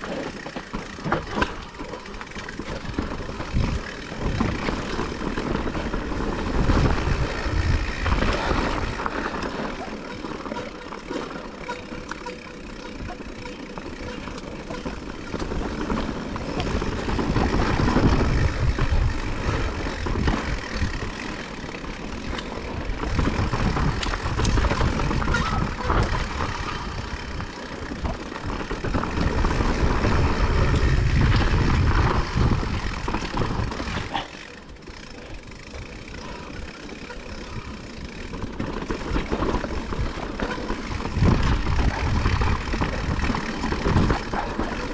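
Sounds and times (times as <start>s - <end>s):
wind buffeting microphone: 5.6s - 9.1s, 16.5s - 21.2s, 22.8s - 34.1s, 39.1s - 44.4s.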